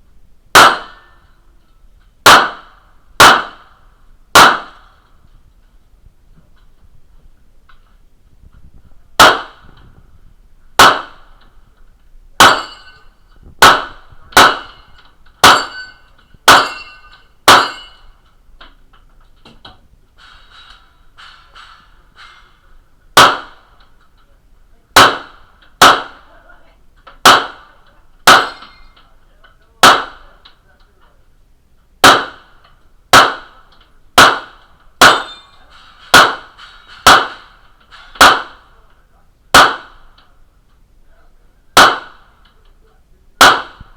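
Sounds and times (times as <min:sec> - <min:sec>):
gunshots: 0:00.5 - 0:01.1, 0:02.2 - 0:03.7, 0:04.3 - 0:05.0, 0:09.2 - 0:09.7, 0:10.8 - 0:11.4, 0:12.4 - 0:13.0, 0:13.6 - 0:18.0, 0:23.1 - 0:23.7, 0:25.0 - 0:26.3, 0:27.2 - 0:28.8, 0:29.8 - 0:30.4, 0:32.0 - 0:37.6, 0:38.2 - 0:38.7, 0:39.5 - 0:40.1, 0:41.8 - 0:42.4, 0:43.4 - 0:43.9.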